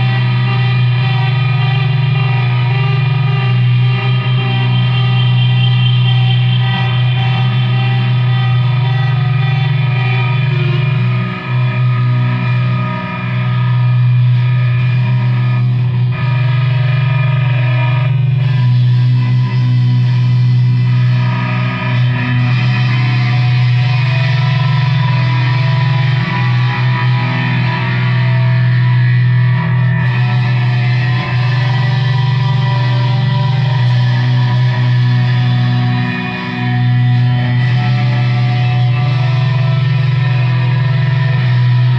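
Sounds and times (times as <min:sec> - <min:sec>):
distorted electric guitar music: 0:00.0 - 0:41.9
low droning note: 0:00.0 - 0:41.9.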